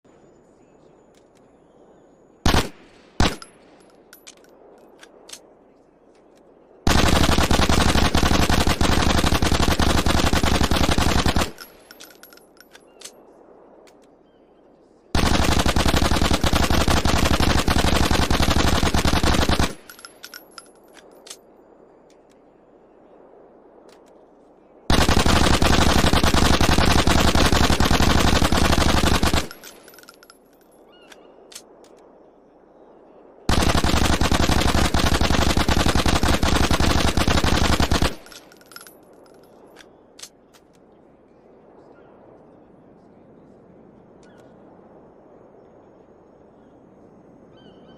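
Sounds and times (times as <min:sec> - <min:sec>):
suppressed automatic gunfire bursts: 0:02.4 - 0:04.4, 0:06.9 - 0:12.7, 0:15.2 - 0:20.7, 0:24.9 - 0:30.4, 0:33.5 - 0:39.5.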